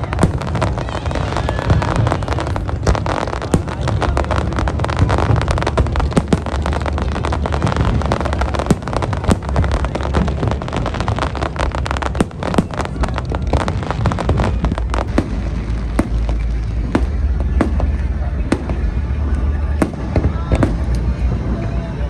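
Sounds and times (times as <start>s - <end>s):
fireworks bangs and crackles: 0.0s - 22.0s.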